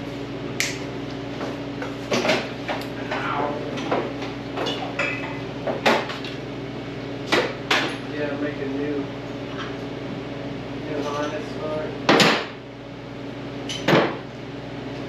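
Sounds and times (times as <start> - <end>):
metal tools clanking: 11.0 - 11.5.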